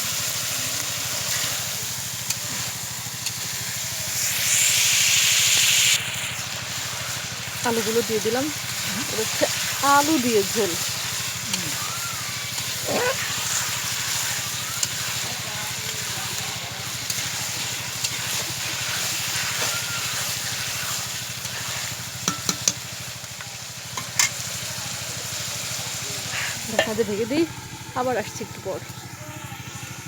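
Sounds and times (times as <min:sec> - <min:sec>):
curry sizzling in a pot: 0:00.0 - 0:29.7
spoon clinking against pot: 0:22.2 - 0:22.8.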